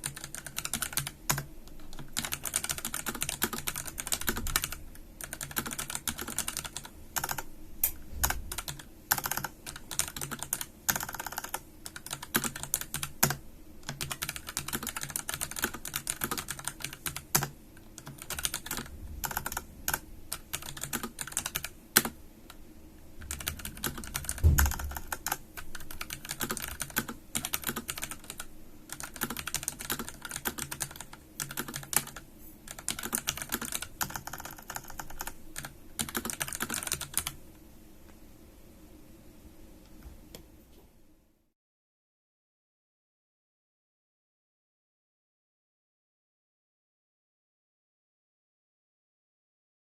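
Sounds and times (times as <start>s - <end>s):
mechanical keyboard typing: 0.0s - 22.2s, 23.2s - 37.4s
heavy low thud: 24.3s - 25.0s.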